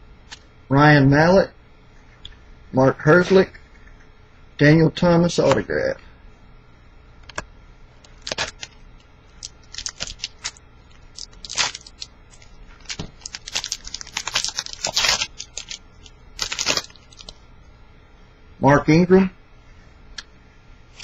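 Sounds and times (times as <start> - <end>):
wrapper ripping and rustling: 8.2 - 8.8, 9.4 - 17.4.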